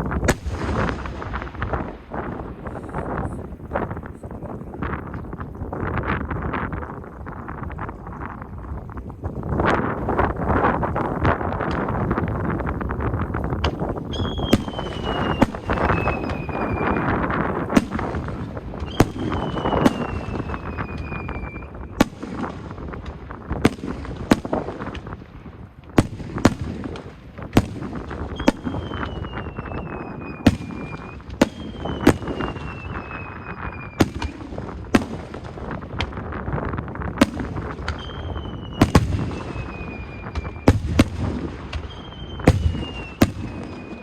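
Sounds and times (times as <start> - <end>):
firework crackling: 0.0 - 44.0
falling firework whistles: 14.0 - 22.1, 28.3 - 35.1, 37.2 - 44.0.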